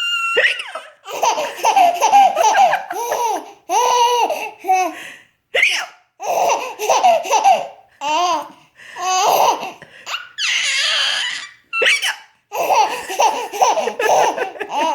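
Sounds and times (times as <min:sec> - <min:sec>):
high-pitched laughter: 0:00.0 - 0:04.1, 0:09.5 - 0:14.9.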